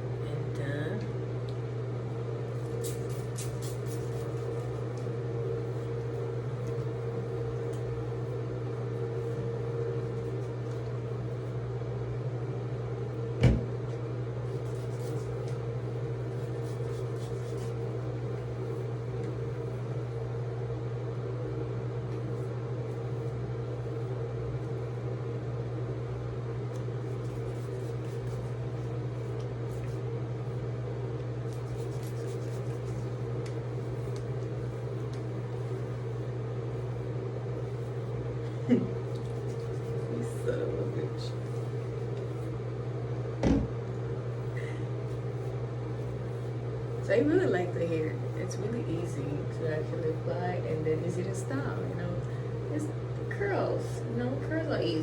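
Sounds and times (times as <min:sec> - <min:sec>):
low appliance hum: 0:00.0 - 0:55.0.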